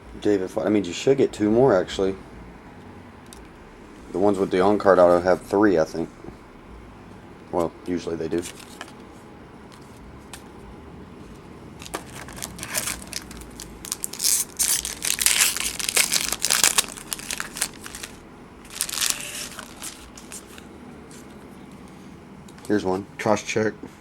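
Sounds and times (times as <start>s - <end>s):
foil wrapper tearing and crumpling: 11.8s - 20.6s.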